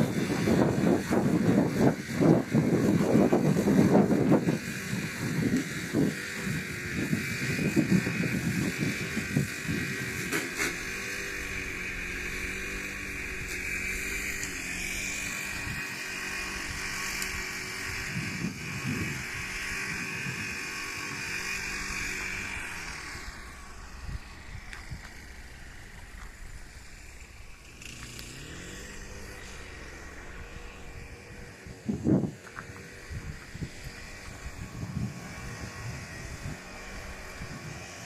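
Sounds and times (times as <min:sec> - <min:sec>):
steady hum: 0:00.0 - 0:38.0.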